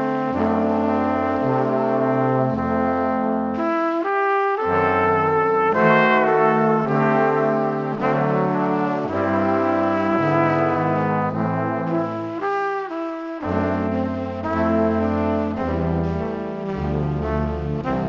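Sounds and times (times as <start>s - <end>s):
brass chords: 0.0s - 18.0s
bass line: 4.6s - 12.4s, 13.4s - 18.0s.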